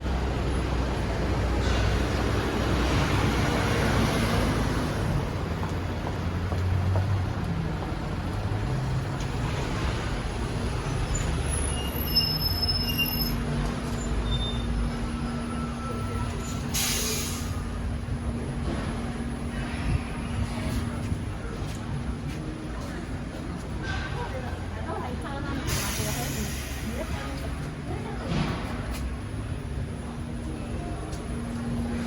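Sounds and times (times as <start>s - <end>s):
heavy traffic rumble: 0.0s - 32.0s
short high squeals: 11.1s - 17.5s.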